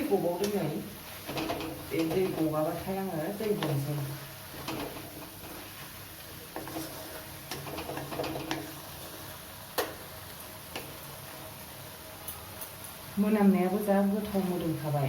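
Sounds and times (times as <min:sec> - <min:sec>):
utensils knocking on cooking pot: 0:01.3 - 0:02.7, 0:04.6 - 0:05.5, 0:07.5 - 0:08.7.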